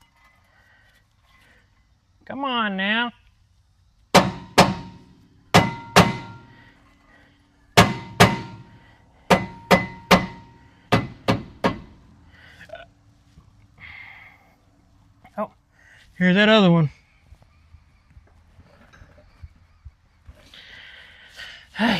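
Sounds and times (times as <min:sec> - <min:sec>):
hammer blows on metal: 0:04.1 - 0:06.7, 0:07.8 - 0:12.0.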